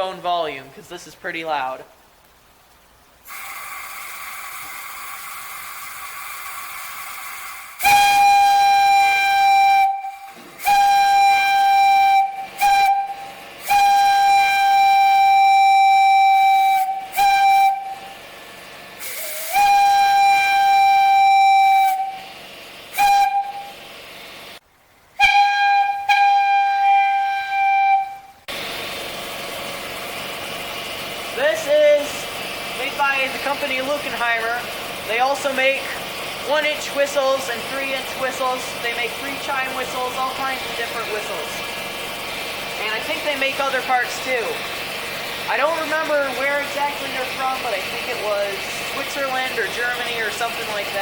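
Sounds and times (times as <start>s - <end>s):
air hissing: 3.2s - 24.6s, 25.2s - 51.0s
steam whistle blasts: 3.3s - 18.3s, 19.0s - 24.0s, 25.2s - 28.5s.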